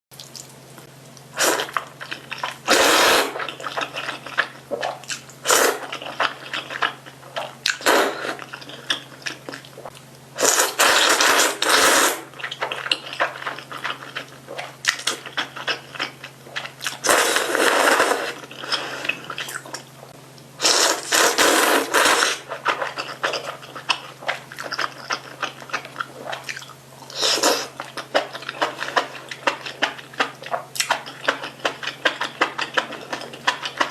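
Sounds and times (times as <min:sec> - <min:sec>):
loud noodle slurping: 0:01.4 - 0:01.8, 0:02.7 - 0:03.6, 0:04.8 - 0:06.2, 0:10.4 - 0:12.3, 0:17.0 - 0:19.2, 0:20.6 - 0:22.9
wet chewing clicks: 0:22.5 - 0:33.9.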